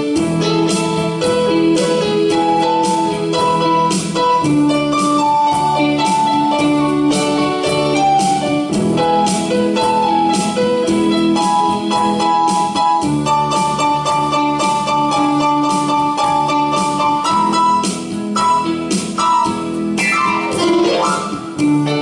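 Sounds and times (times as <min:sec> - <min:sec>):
keyboard holding notes: 0:00.0 - 0:22.0
steady drum beat: 0:17.8 - 0:22.0.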